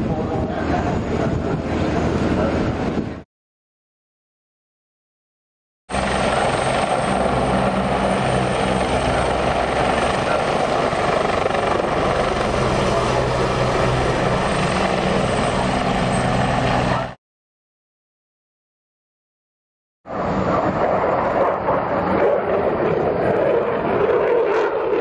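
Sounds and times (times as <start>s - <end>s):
aircraft engine drone: 5.9s - 17.2s, 20.1s - 25.0s.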